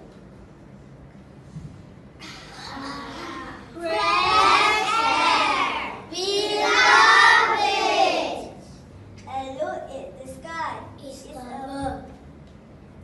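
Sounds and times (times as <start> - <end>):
children singing in unison: 3.8 - 8.5.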